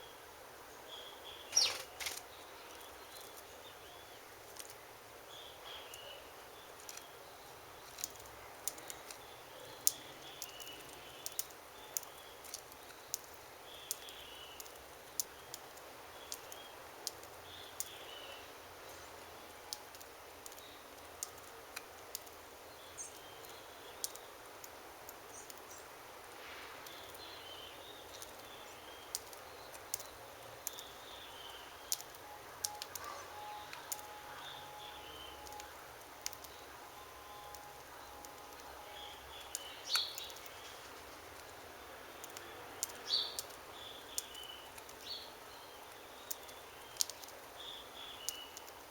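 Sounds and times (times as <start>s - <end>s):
small birds chirping: 0.0s - 48.9s.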